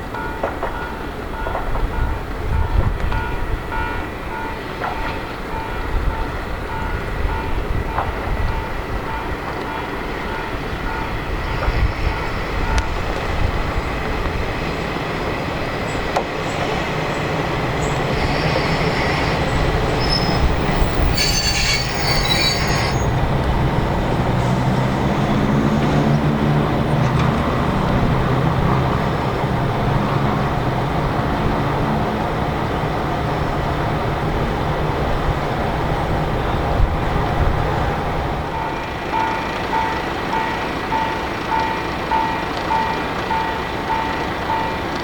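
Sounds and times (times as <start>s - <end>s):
railcar wheels squealing: 2.8s - 14.0s, 15.8s - 23.6s.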